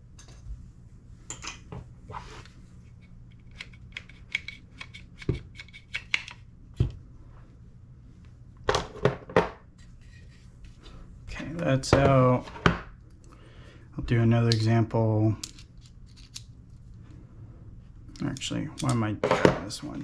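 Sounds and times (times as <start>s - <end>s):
small metal parts clicking and scraping: 15.4s - 16.5s.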